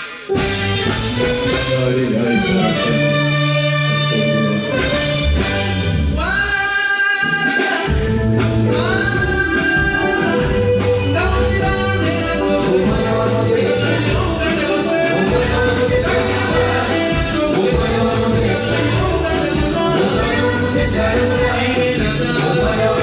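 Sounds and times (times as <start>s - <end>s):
live band playing: 0.0s - 23.0s
person singing: 6.2s - 23.0s.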